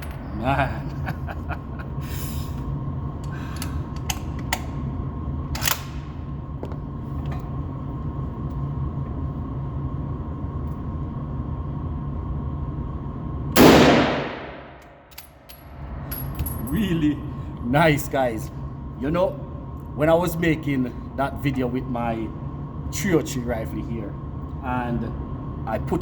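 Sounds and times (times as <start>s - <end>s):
low rumble: 2.8s - 20.5s
rifle shot with echo: 13.6s - 14.8s.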